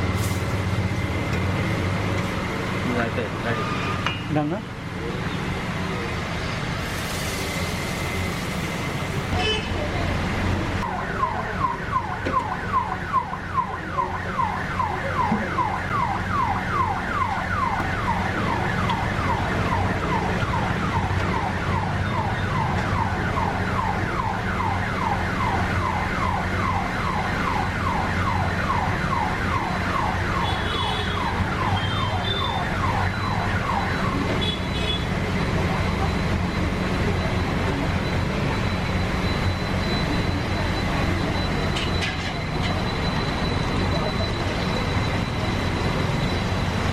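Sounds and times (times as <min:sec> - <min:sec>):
siren wailing in falling sweeps: 0:10.9 - 0:30.5.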